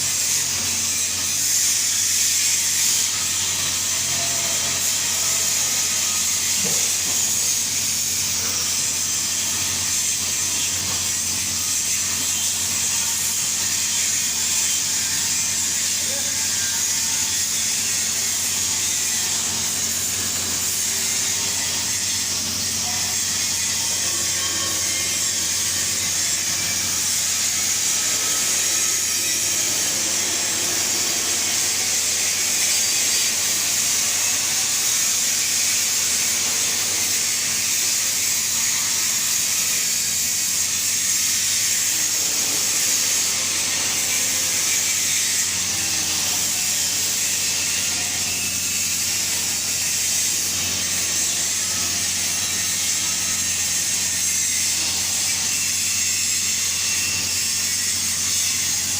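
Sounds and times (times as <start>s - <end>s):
welding arc hissing: 0.0s - 58.9s.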